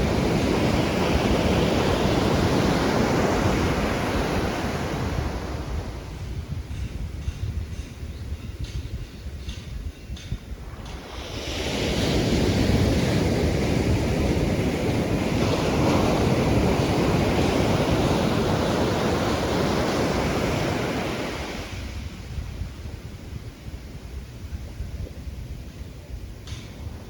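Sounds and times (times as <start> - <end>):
wave breaking on shore: 0.0 - 6.3, 10.6 - 23.1.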